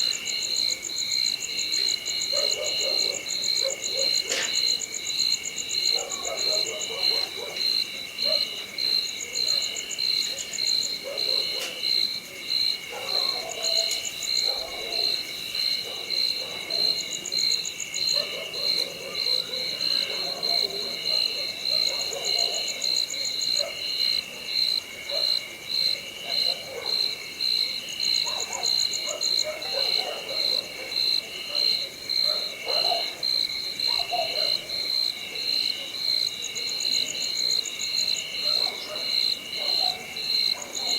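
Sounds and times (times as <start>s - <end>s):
insects chirping: 0.0s - 40.9s.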